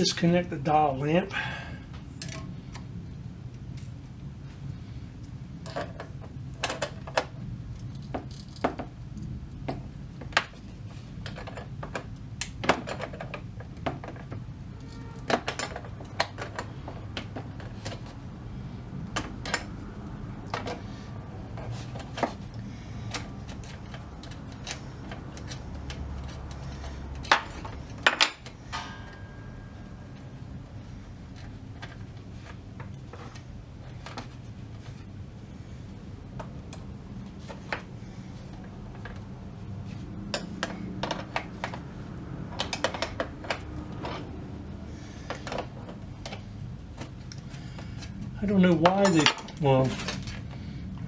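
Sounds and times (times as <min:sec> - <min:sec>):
low hum: 0:16.0 - 0:42.5.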